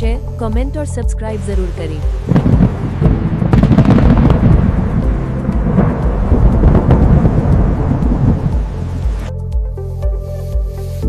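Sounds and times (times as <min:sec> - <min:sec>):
electronic music with pulsing bass: 0:00.0 - 0:11.0
thunder rumbling and crackling: 0:02.1 - 0:09.3.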